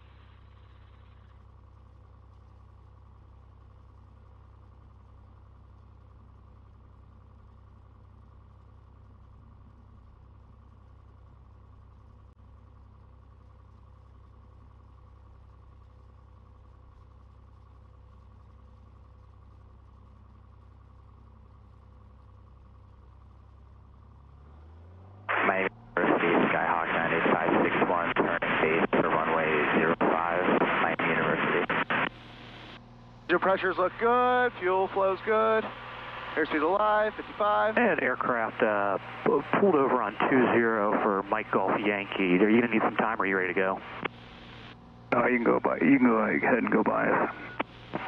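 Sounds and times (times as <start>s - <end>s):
propeller plane engine drone: 0.0s - 48.0s.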